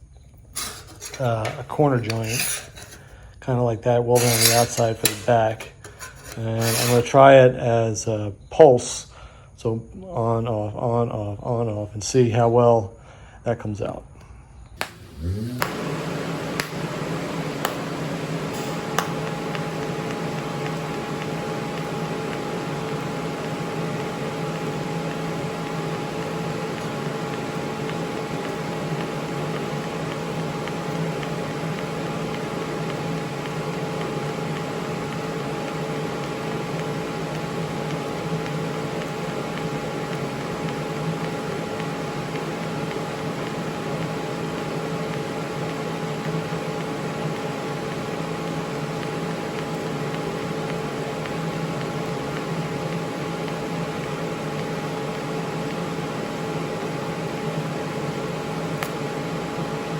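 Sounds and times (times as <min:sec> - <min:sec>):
welding arc hissing: 0:00.0 - 0:03.2, 0:04.2 - 0:07.2, 0:14.8 - 0:59.9
steady hum: 0:14.8 - 0:59.9.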